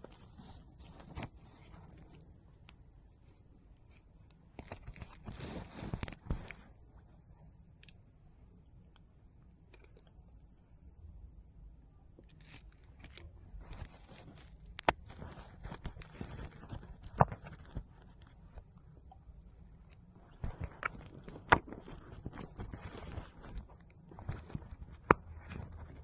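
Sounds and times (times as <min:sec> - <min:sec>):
coat fabric rustling: 0:00.0 - 0:02.2, 0:03.2 - 0:07.4, 0:12.4 - 0:18.7, 0:20.1 - 0:26.0.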